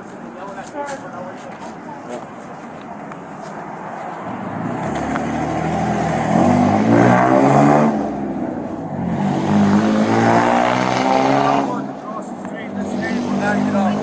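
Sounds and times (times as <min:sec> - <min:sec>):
car engine accelerating: 0:04.2 - 0:12.0.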